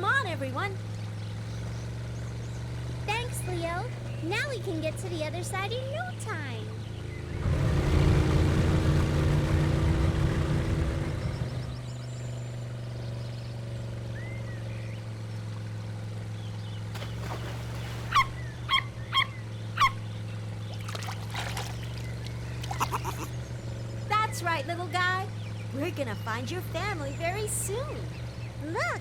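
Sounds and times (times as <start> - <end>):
cartoon boat motor: 0.0 - 29.0.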